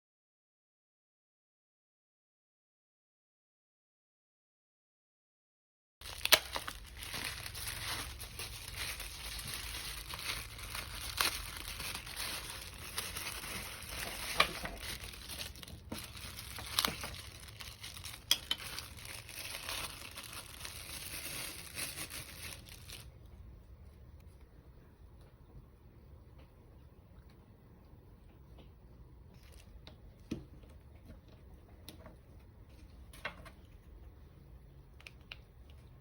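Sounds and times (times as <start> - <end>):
packaging crinkling: 6.0 - 23.2.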